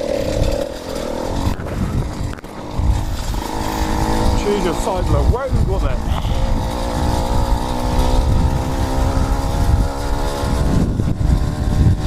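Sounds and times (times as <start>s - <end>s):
motorized bicycle engine running: 0.0s - 12.0s
wind rumble on microphone: 1.3s - 12.0s.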